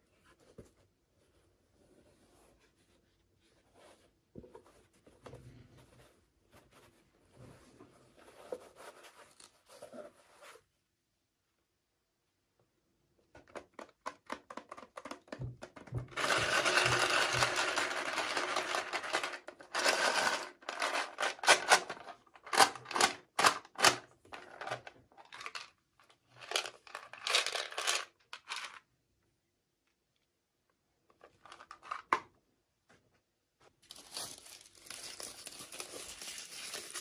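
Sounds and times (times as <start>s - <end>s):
packaging crinkling and tearing: 33.8s - 37.0s
packaging rustling: 33.8s - 37.0s.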